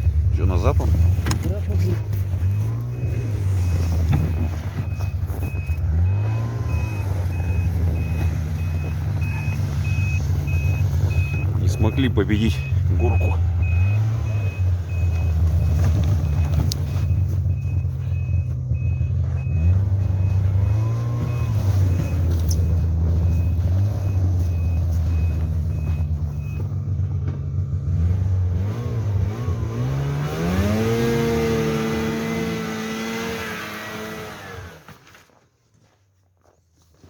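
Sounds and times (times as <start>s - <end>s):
vehicle engine revving: 0.0s - 34.9s
high reversing beep: 2.4s - 26.7s.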